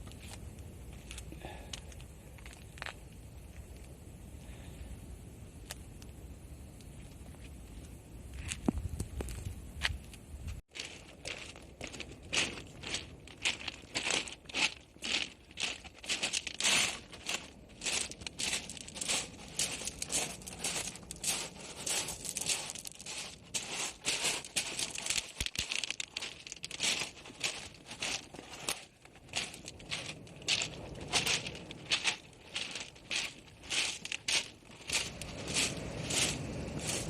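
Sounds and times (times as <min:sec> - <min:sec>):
footsteps crunching on pebbles: 0:08.4 - 0:37.0.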